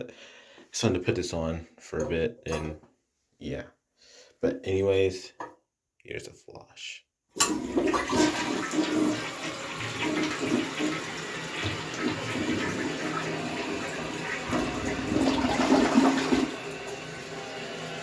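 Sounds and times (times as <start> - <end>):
toilet flushing: 7.4 - 18.0.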